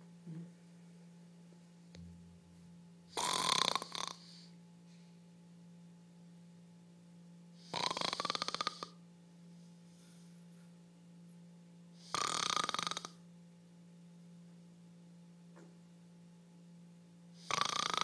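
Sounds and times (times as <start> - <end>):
loud rattling snoring: 3.1 - 4.5, 7.6 - 9.0, 12.0 - 13.2, 17.4 - 18.0.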